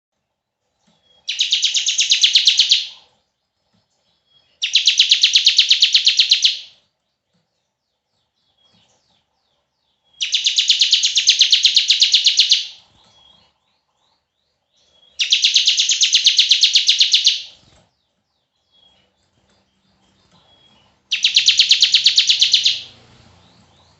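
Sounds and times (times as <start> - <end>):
bird buzzy rattling trills: 0.8 - 6.8, 10.2 - 13.5, 14.8 - 23.9.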